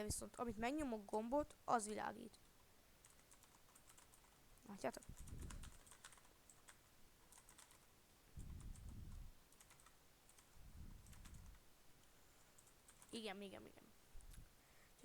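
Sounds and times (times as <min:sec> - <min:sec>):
mechanical keyboard clicks: 0:05.2 - 0:06.7, 0:07.3 - 0:07.8, 0:09.5 - 0:09.9.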